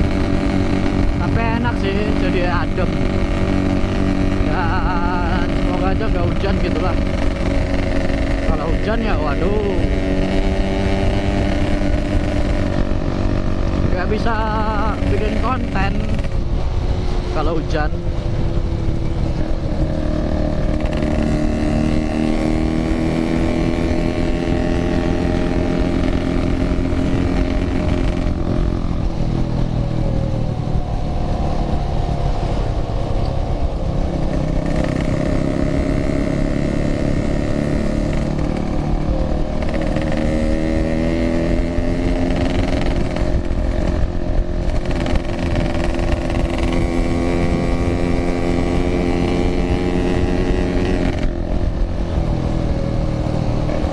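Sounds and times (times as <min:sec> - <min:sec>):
two-stroke motorcycle engine revving: 0:00.0 - 0:53.9.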